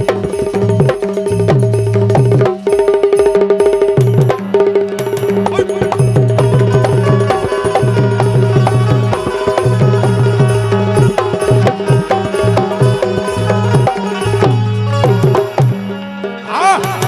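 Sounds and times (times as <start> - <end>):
fast hand-drum strokes: 0.0 - 15.9, 16.5 - 17.0
held melodic tone: 5.0 - 15.5.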